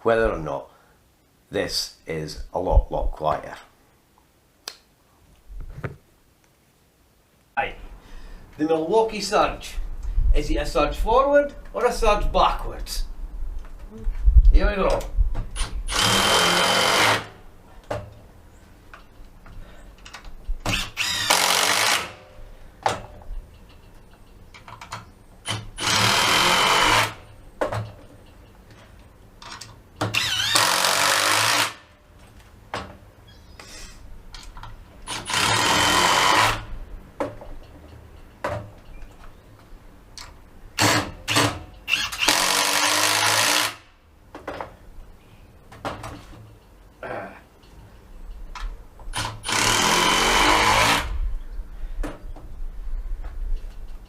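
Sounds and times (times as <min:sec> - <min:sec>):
impact driver driving screws: 0:15.6 - 0:17.4, 0:20.6 - 0:22.2, 0:25.5 - 0:27.2, 0:30.0 - 0:31.8, 0:35.1 - 0:36.7, 0:40.8 - 0:43.8, 0:49.1 - 0:51.1.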